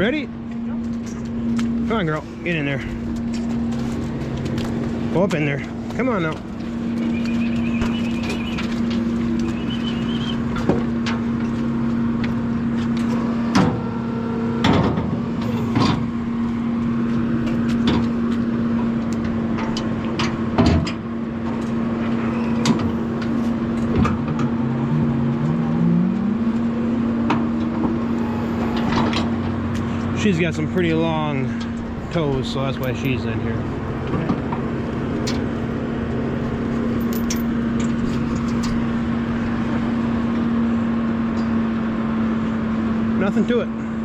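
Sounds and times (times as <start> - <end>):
hydraulic power unit humming: 0.0 - 44.0
rising pitch glide: 22.2 - 29.8
metal clanks and knocks: 35.2 - 35.6, 36.9 - 39.0.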